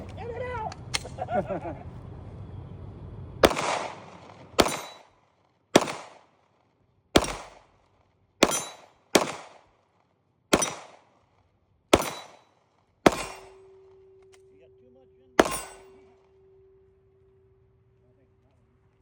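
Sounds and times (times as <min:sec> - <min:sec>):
gunshots with echo: 0:03.4 - 0:05.1, 0:05.8 - 0:06.3, 0:07.2 - 0:07.8, 0:08.4 - 0:09.7, 0:10.5 - 0:11.1, 0:11.9 - 0:14.0, 0:15.4 - 0:16.2.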